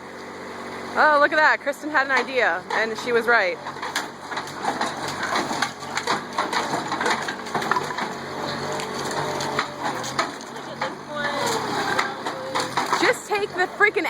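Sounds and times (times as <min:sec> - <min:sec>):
wood cracking and splintering: 0:03.6 - 0:13.4.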